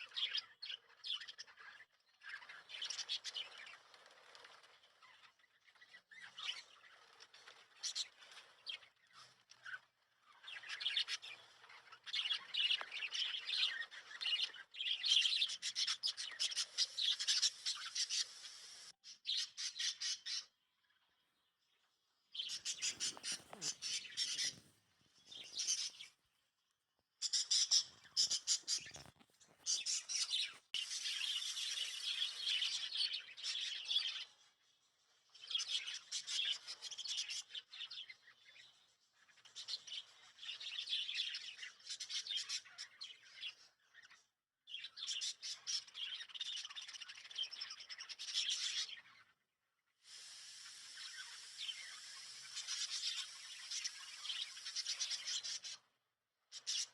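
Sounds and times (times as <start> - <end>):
parrots chirping and chattering: 22.4 - 26.3, 27.2 - 34.1, 50.8 - 56.0.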